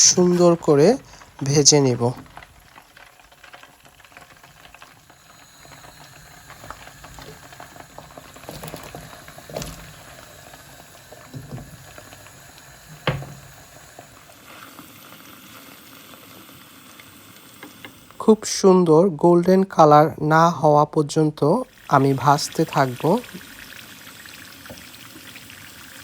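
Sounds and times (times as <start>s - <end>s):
squash sizzling in hot oil: 0.0s - 19.5s, 20.3s - 26.0s
knocks in a pan: 12.8s - 13.8s.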